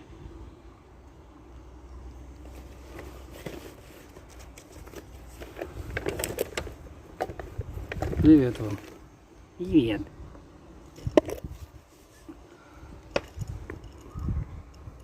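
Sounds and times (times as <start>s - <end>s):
rustling handling noise: 2.3s - 9.2s, 10.8s - 14.2s.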